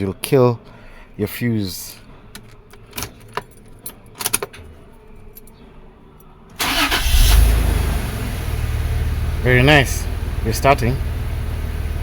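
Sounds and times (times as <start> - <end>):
car engine cranking and starting: 6.6 - 12.0
engine low rumble: 6.6 - 12.0.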